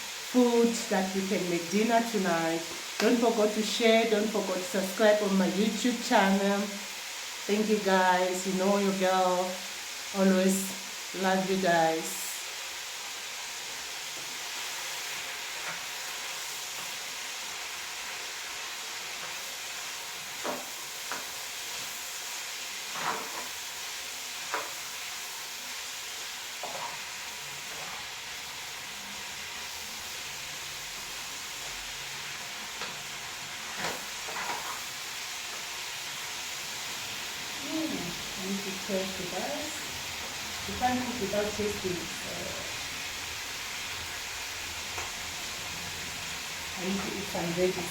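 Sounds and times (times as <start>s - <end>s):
food sizzling in a pot: 0.0s - 47.9s.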